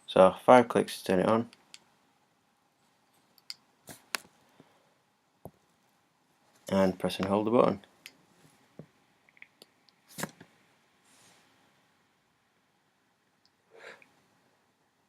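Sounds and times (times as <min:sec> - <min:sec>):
soft breathing of vapour: 0:11.0 - 0:11.8, 0:13.7 - 0:14.2.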